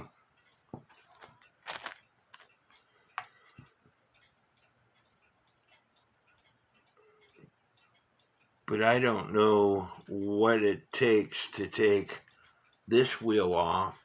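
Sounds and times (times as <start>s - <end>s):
small metal parts clicking: 0.9s - 3.3s.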